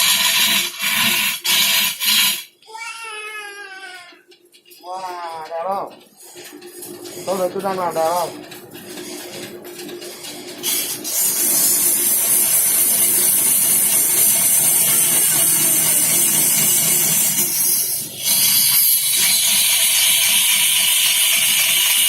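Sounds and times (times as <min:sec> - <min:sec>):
lathe tool scraping wood: 0:00.0 - 0:02.5, 0:06.2 - 0:22.0
low motor hum: 0:04.8 - 0:10.6.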